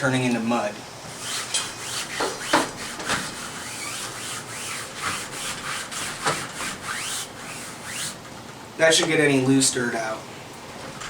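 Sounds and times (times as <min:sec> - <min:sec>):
brush scrubbing window screen mesh: 0:01.1 - 0:08.2.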